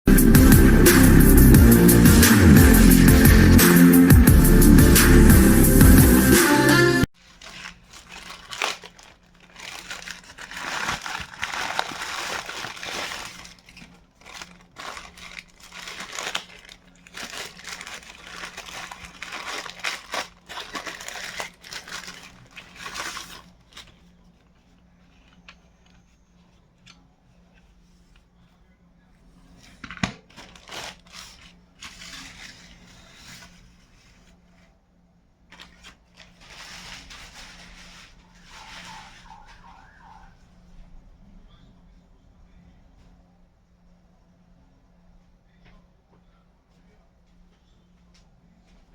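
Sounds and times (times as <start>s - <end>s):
packaging crinkling and rustling: 7.2s - 26.1s, 29.6s - 34.3s, 35.5s - 40.2s.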